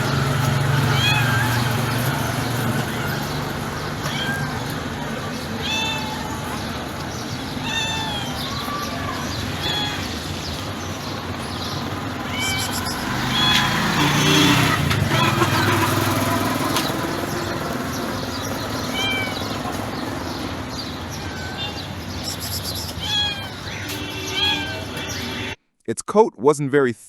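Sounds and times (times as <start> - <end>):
cat meowing softly: 0.8 - 1.7, 4.0 - 6.8, 7.6 - 10.3, 12.2 - 13.9, 18.8 - 19.8, 21.0 - 25.5.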